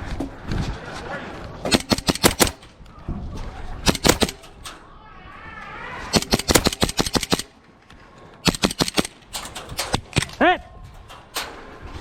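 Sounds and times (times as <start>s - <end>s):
airsoft guns firing: 1.7s - 2.7s, 3.8s - 4.5s, 6.1s - 7.6s, 8.4s - 10.4s
faint shouting voice: 4.9s - 6.1s.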